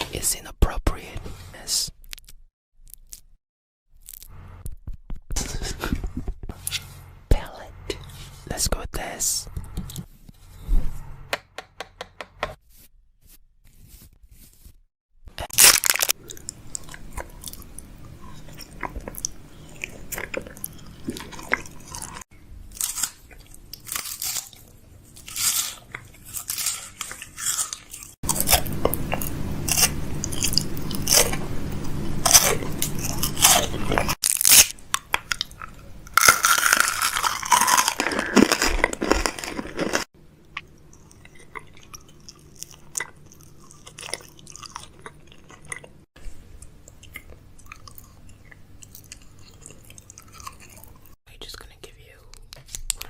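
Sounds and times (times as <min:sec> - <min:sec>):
close crunching: 0:15.4 - 0:17.6, 0:20.3 - 0:31.4, 0:32.2 - 0:40.1.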